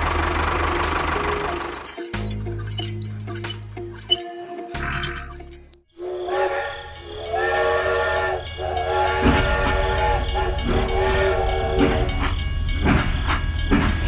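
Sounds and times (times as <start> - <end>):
low machine rumble: 0.0 - 4.2, 4.9 - 14.0
multi-tone horn blasts: 5.9 - 12.5.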